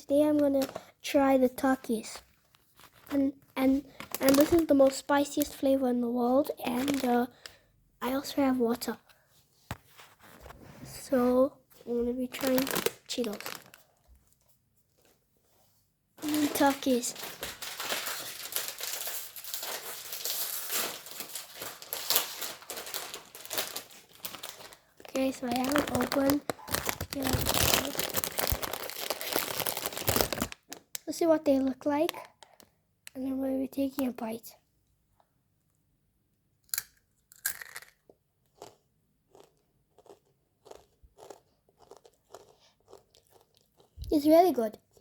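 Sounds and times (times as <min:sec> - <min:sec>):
plastic snack bag crinkling: 0:00.3 - 0:00.9, 0:02.0 - 0:05.6, 0:06.6 - 0:07.5, 0:12.0 - 0:14.2, 0:16.2 - 0:32.7, 0:37.3 - 0:38.0, 0:38.6 - 0:44.2
tortilla chip crunching: 0:25.8 - 0:30.9, 0:36.7 - 0:43.9.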